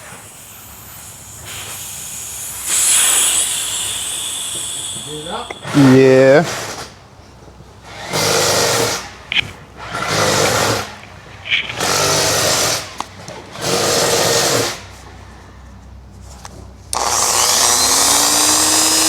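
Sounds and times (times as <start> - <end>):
small power tool whirring: 0.0 - 6.8, 16.9 - 19.0.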